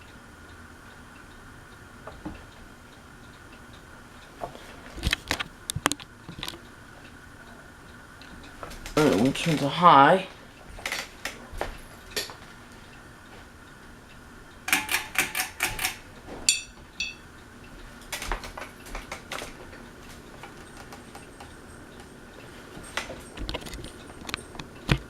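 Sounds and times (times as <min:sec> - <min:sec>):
ringing tinks: 0:16.5 - 0:17.3.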